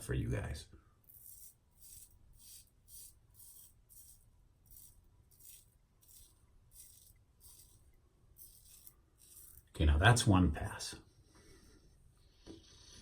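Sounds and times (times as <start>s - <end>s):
razor scraping stubble: 1.1s - 9.8s.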